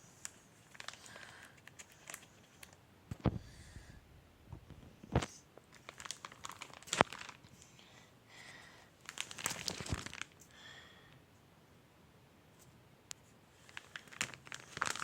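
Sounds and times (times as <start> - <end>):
crinkling and rustling: 0.0 - 3.4, 4.6 - 7.8, 9.0 - 10.5, 12.6 - 15.0.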